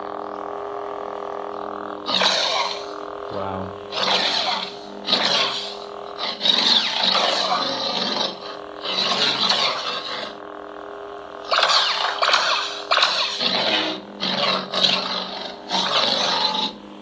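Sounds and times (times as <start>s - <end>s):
lightsaber electric hum: 0.0s - 17.0s
lightsaber swooshes: 11.5s - 16.7s.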